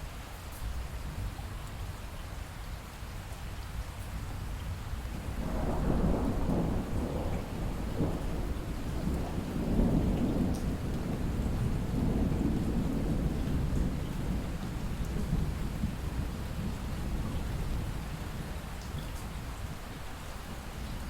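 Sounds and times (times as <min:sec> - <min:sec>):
light rain: 0:00.0 - 0:21.0
distant thunder rumbling: 0:05.2 - 0:18.3.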